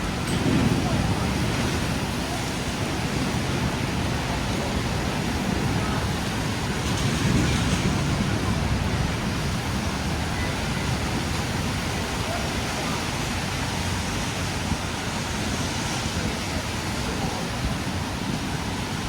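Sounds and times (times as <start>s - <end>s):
heavy rain on street: 0.0s - 19.0s
traffic rumble: 0.0s - 19.0s.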